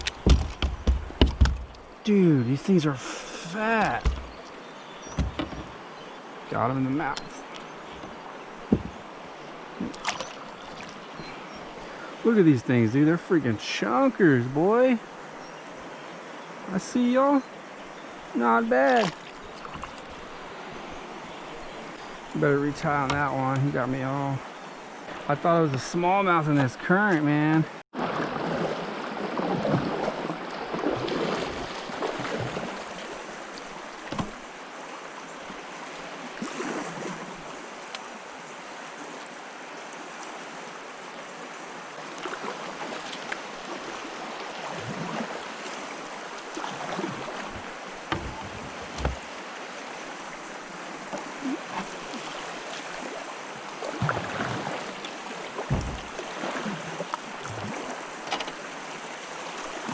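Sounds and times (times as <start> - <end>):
knocks and low thumps: 0.0 - 1.9, 3.8 - 4.4, 5.1 - 5.8, 8.7 - 9.0, 47.5 - 49.2, 55.7 - 56.2
river current rushing: 0.0 - 26.6, 27.2 - 59.9.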